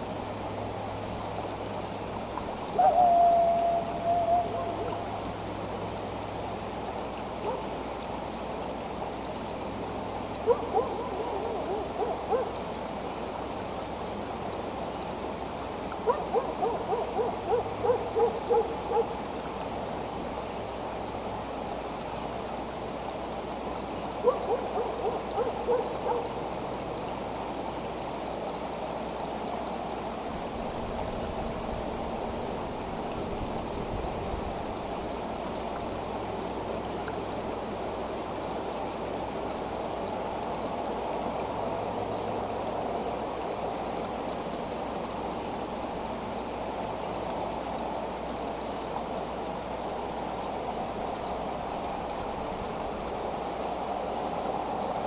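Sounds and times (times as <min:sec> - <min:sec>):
steady background hiss: 0:00.0 - 0:55.0
animal calling: 0:02.7 - 0:05.2, 0:10.4 - 0:12.6, 0:16.0 - 0:19.2, 0:24.2 - 0:26.4
animal calling short rising notes: 0:02.7 - 0:05.2.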